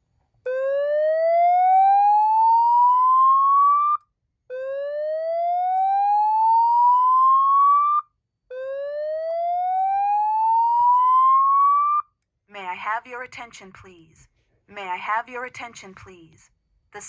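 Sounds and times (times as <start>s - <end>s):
fire alarm slow whoop tone: 0.4s - 12.1s.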